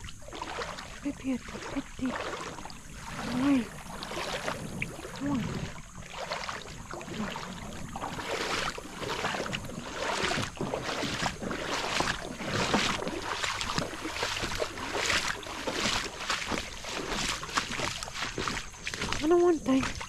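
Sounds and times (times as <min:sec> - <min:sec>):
boots splashing through water: 0:00.0 - 0:20.0.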